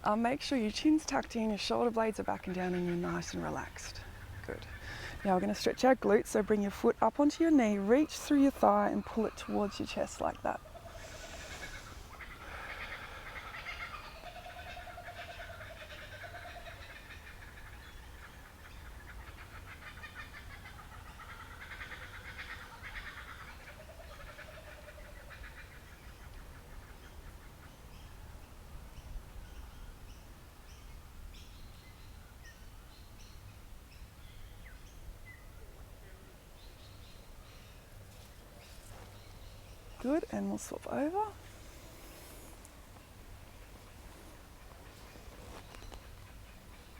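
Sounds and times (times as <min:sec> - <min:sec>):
kookaburras chuckling calls: 0:07.6 - 0:26.0.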